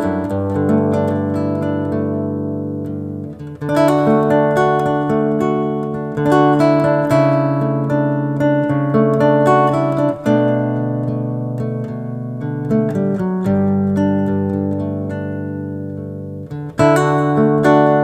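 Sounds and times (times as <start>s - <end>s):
acoustic guitar strumming chords: 0.0s - 18.0s.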